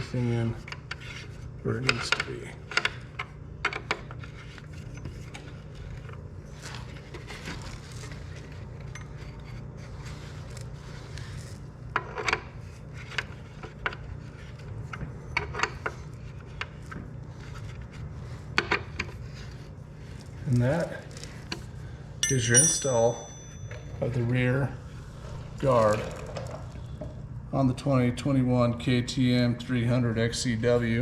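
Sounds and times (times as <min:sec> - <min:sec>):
tool clinking on metal: 0:22.2 - 0:24.4.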